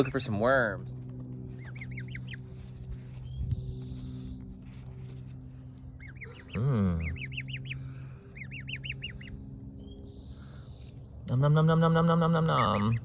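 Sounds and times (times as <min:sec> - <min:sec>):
gosling peeping: 0:01.6 - 0:04.3, 0:05.9 - 0:10.0, 0:11.3 - 0:13.0.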